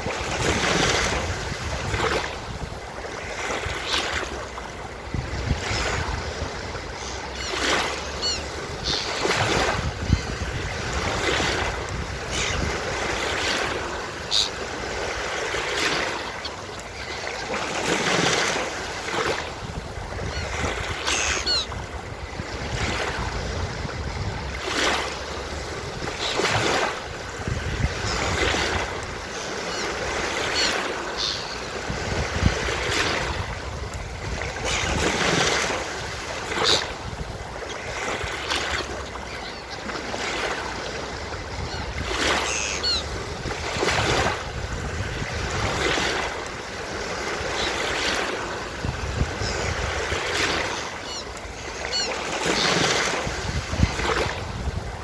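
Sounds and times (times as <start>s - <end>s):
ocean surf breaking on beach: 0.0s - 55.0s
seagull calls: 6.9s - 10.6s, 12.2s - 12.9s, 13.8s - 14.7s, 20.2s - 21.8s, 29.4s - 31.9s, 36.5s - 37.0s, 39.2s - 40.6s, 41.5s - 43.2s, 47.4s - 48.1s, 49.3s - 53.2s.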